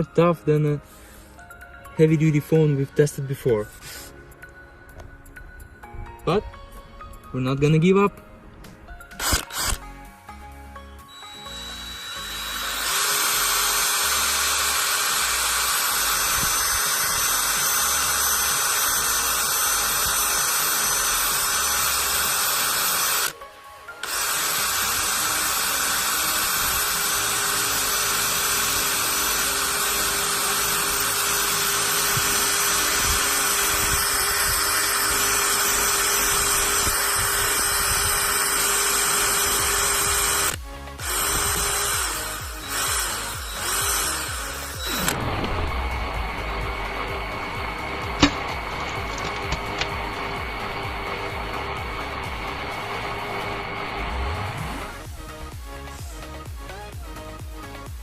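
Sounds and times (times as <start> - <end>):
cordless drill on glass: 9.1 - 10.0, 11.0 - 23.4, 24.0 - 55.1.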